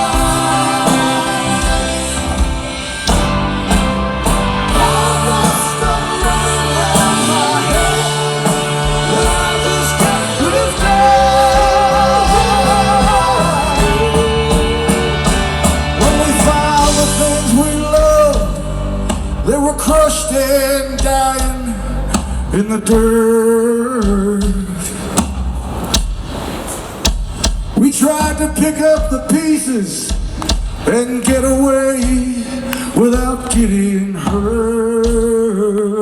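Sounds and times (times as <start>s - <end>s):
wordless melodic line: 0.0s - 19.6s
live rock band playing: 0.0s - 23.4s.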